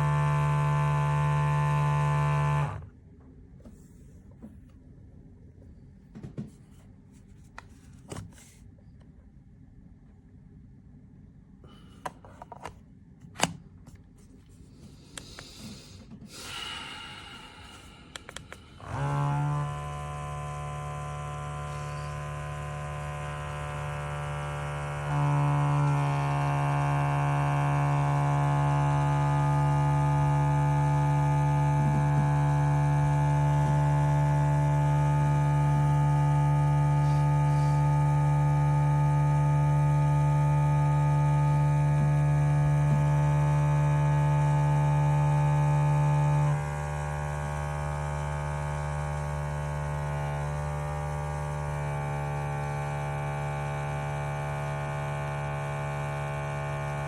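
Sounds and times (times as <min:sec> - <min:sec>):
electric pump buzzing: 0:00.0 - 0:02.9, 0:14.7 - 0:57.0.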